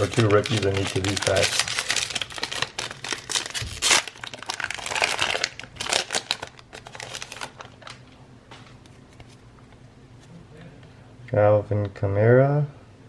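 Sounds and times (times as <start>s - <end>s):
plastic wrapper crinkling: 0.0s - 8.2s.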